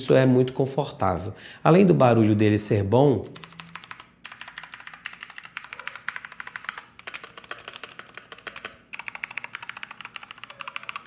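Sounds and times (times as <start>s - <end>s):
mechanical keyboard typing: 3.4s - 11.0s.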